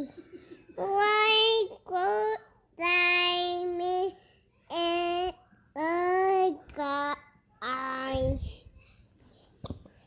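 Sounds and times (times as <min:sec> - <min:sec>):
young child singing: 0:00.8 - 0:08.5.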